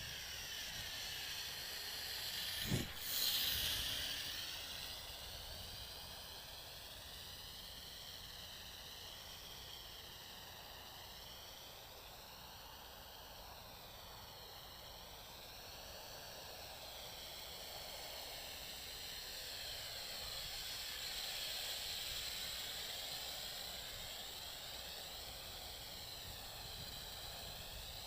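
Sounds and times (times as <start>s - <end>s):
toy drone motors whining: 0.0s - 10.9s, 17.5s - 28.0s.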